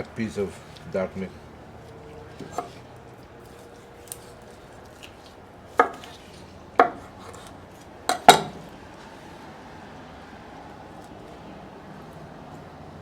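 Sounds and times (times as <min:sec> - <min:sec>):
knife chopping on cutting board: 0:02.4 - 0:02.8, 0:05.8 - 0:06.2, 0:06.8 - 0:07.5, 0:08.1 - 0:08.7.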